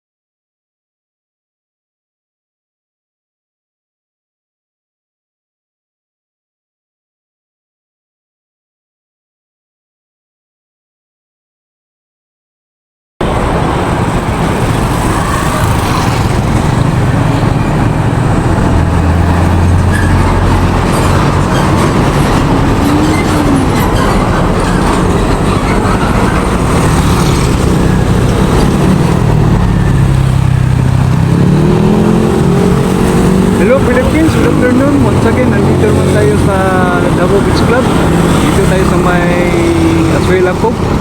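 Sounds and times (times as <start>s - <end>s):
road traffic rumble: 13.2s - 41.0s.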